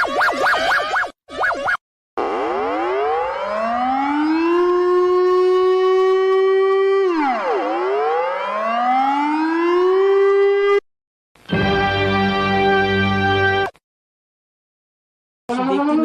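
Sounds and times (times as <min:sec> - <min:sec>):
civil defense siren wailing: 0:02.3 - 0:10.8.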